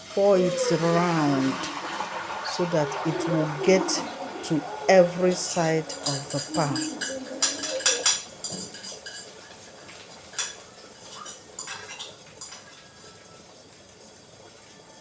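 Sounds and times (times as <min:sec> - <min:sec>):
utensils clinking on frying pan: 0:02.9 - 0:13.2.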